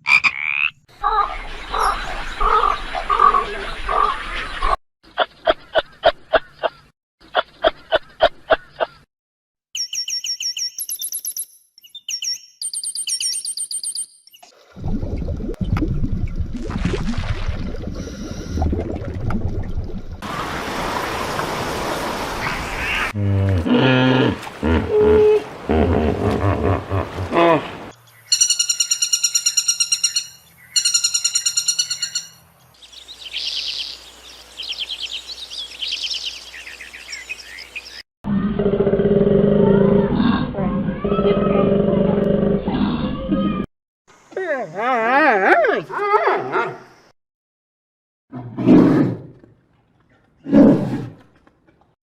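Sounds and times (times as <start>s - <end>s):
bird chirping rapidly: 0.5s - 9.0s, 9.8s - 14.4s, 28.0s - 38.0s
animal call: 22.4s - 27.9s.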